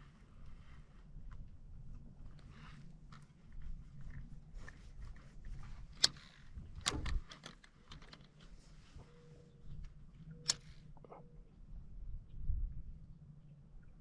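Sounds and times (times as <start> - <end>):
low rumble: 9.6 - 14.0.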